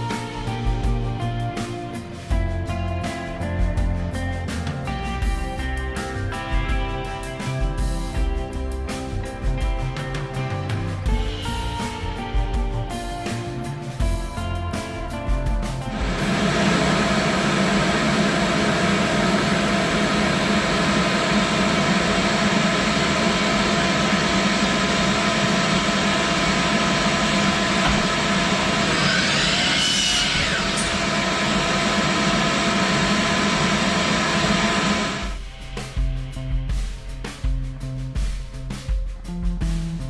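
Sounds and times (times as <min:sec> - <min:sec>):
power tool motor running: 0:15.9 - 0:35.4.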